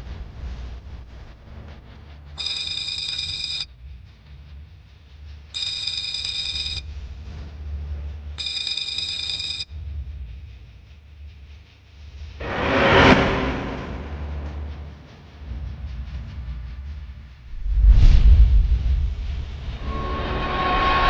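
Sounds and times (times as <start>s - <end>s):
electronic ringing tone: 2.4s - 3.7s, 5.6s - 6.8s, 8.4s - 9.7s
low rumble: 9.9s - 21.0s.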